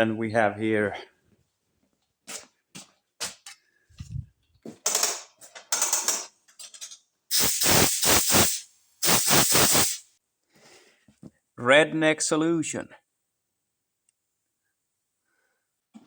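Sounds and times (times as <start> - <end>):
rapid ratcheting clicks: 7.3 - 10.0.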